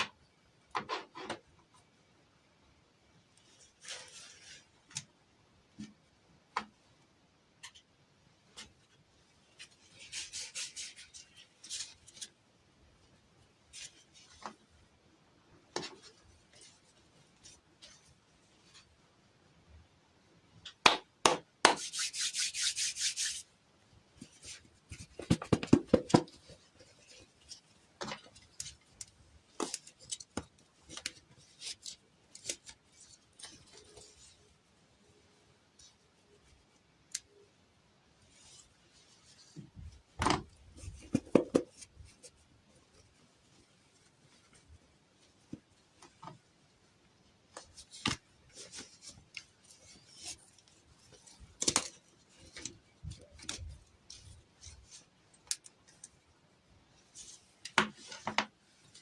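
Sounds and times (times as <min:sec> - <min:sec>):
rubbing or rustling: 0:03.4 - 0:04.9, 0:08.6 - 0:12.4, 0:21.6 - 0:23.5, 0:38.2 - 0:56.2.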